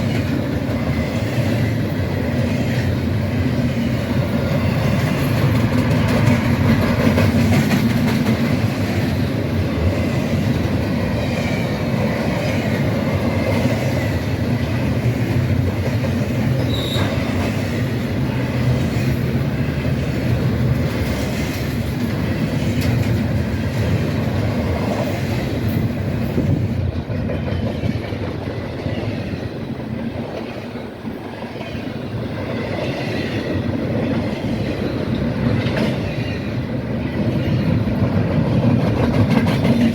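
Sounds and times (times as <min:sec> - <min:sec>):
freight train rolling past: 0:00.0 - 0:39.9.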